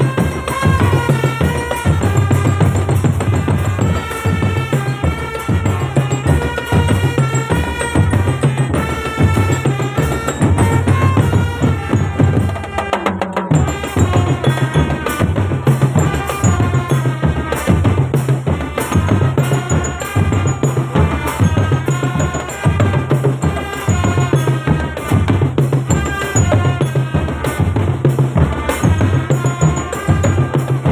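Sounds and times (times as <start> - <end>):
fast drum roll: 0.0 - 30.9
marching drum band playing: 0.0 - 30.9.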